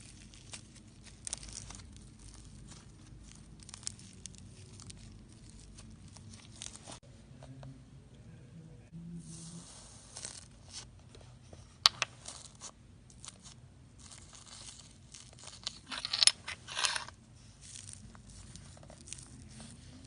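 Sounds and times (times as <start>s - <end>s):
dried slime crust crackling: 0.0s - 7.0s, 11.8s - 15.9s, 16.7s - 20.0s.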